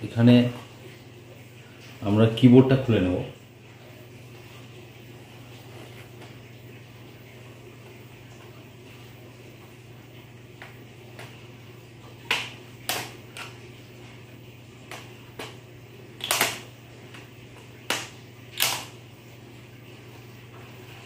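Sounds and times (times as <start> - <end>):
plastic clips clicking and snapping: 16.2 - 16.6, 17.9 - 18.9.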